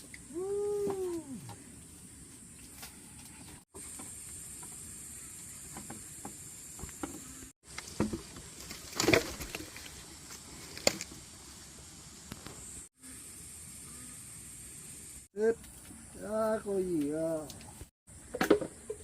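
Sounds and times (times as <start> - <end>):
steady high hiss: 9.8 - 18.2.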